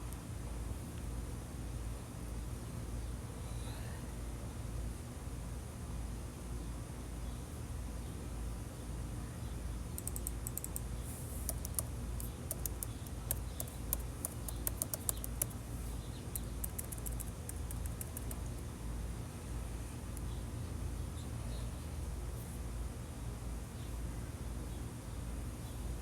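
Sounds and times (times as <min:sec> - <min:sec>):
low background hum: 0:00.0 - 0:26.0
typing on a keyboard: 0:10.0 - 0:10.9, 0:11.5 - 0:15.6, 0:16.3 - 0:18.6.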